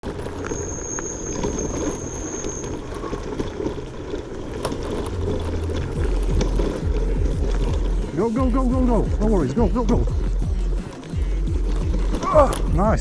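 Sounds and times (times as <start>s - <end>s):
rattles and clicks: 0.0s - 13.0s
wind and ground rumble: 0.0s - 13.0s
thin high whistle: 0.4s - 3.2s.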